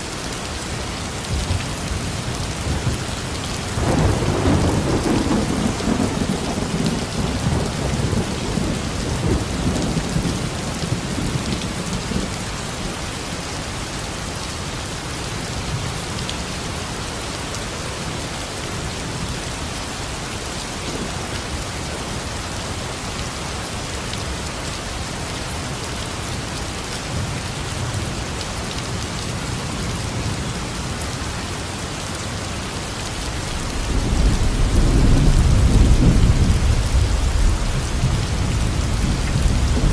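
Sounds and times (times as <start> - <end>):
rain falling: 0.0 - 39.9
thunder rumbling: 3.7 - 12.4, 33.3 - 39.9.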